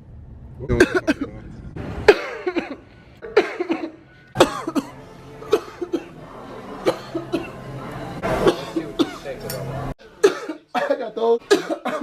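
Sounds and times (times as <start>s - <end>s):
man coughing: 0.8s - 1.4s, 2.1s - 6.1s, 8.4s - 9.3s, 10.2s - 12.0s.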